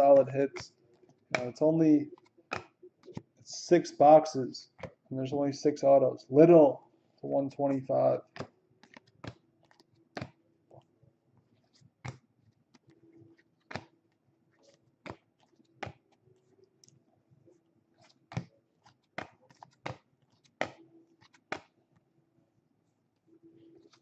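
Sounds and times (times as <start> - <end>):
cards snapping and clicking: 2.5 - 3.2, 18.3 - 21.8.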